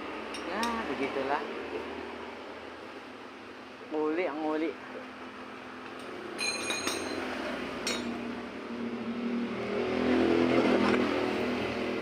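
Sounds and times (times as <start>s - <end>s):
motorcycle engine revving: 6.9s - 12.0s.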